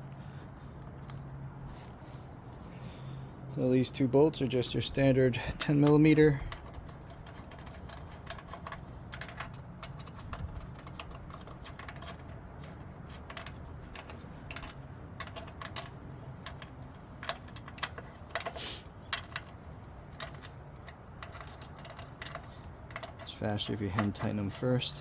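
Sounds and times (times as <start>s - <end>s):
steady low hum: 0.0s - 25.0s
metallic rattle: 5.5s - 24.8s.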